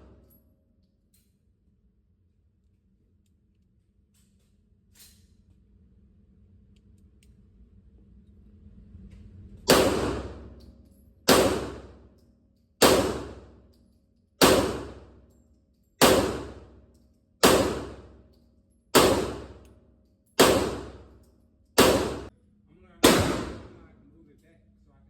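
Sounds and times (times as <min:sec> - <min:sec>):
gunshots echoing: 0:09.7 - 0:10.5, 0:11.3 - 0:12.0, 0:12.8 - 0:13.5, 0:14.4 - 0:15.1, 0:16.0 - 0:16.7, 0:17.4 - 0:18.2, 0:19.0 - 0:19.6, 0:20.4 - 0:21.2, 0:21.8 - 0:22.3, 0:23.0 - 0:23.9.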